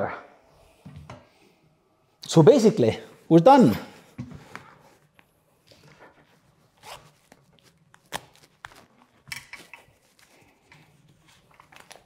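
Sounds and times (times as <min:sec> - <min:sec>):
hands and tools clicking and rustling: 0:07.3 - 0:12.0.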